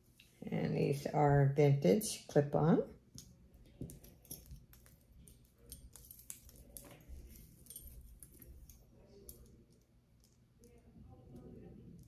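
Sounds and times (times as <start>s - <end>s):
jewelry clicking and clinking: 3.0s - 12.0s.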